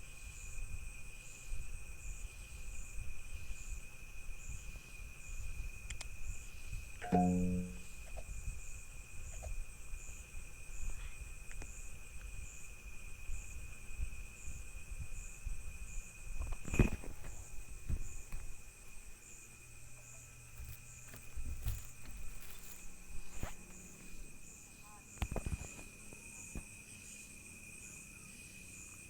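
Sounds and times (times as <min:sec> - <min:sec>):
insect chirp: 0:00.0 - 0:29.0
insects trilling: 0:00.0 - 0:29.0
knocks or thumps: 0:07.0 - 0:07.9.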